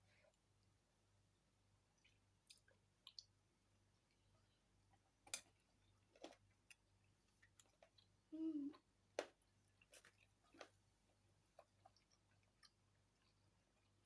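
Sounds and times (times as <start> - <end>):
faint low hum: 0.0 - 14.0
faint eating clicks: 11.5 - 14.0.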